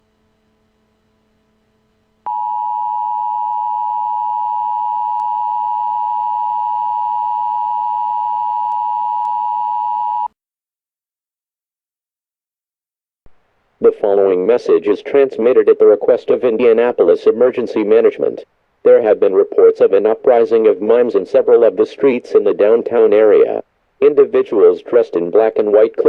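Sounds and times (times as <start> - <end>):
loud steady electronic tone: 2.3 - 10.3.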